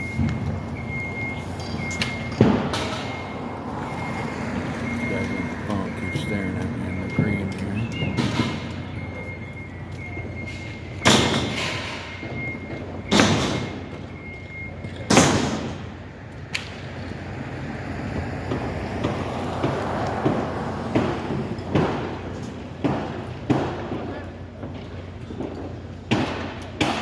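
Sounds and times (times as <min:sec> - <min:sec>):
loud ringing impacts: 0:00.0 - 0:14.2
steady high-pitched tone: 0:04.0 - 0:09.7.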